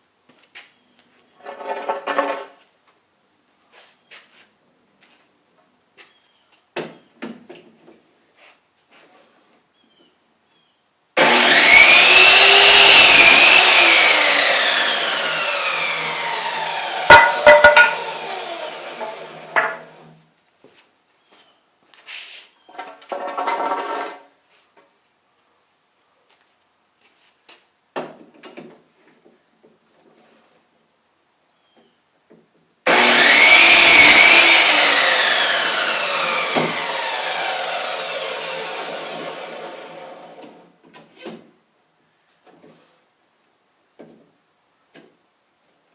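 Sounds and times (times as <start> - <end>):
power saw cutting wood: 11.2 - 20.2, 23.1 - 24.3, 32.9 - 40.6.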